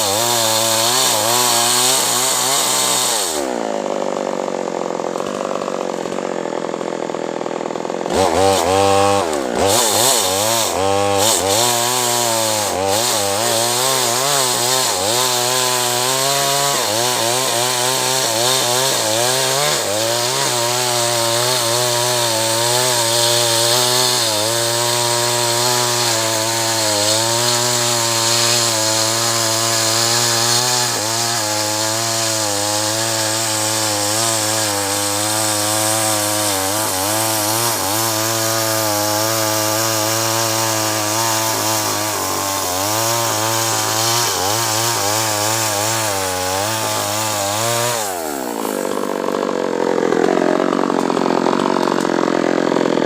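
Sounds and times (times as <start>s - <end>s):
chainsaw cutting wood: 0.0s - 53.0s.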